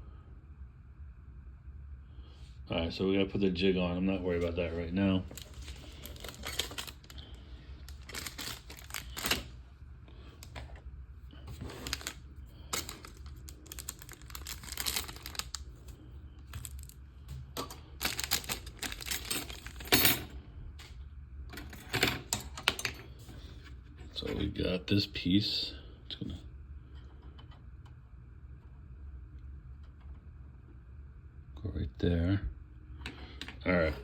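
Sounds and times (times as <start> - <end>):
steady low hum: 0.0 - 34.0
plastic parts clicking and rattling: 5.3 - 9.6, 11.5 - 15.7, 16.4 - 20.2.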